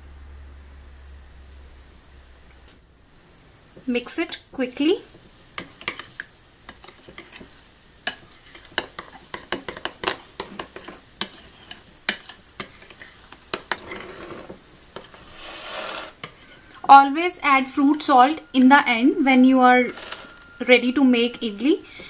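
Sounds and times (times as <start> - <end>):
spoon stirring batter in a bowl: 5.6 - 15.3.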